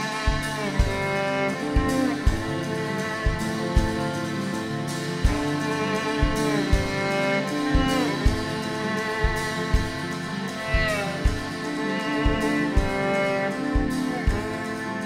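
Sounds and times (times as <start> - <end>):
live band playing: 0.0 - 15.0
kick drum beat: 0.3 - 1.2, 1.8 - 2.6, 3.2 - 4.1, 5.2 - 5.6, 6.2 - 7.1, 7.7 - 8.6, 9.2 - 11.6, 12.2 - 13.2, 13.8 - 14.6.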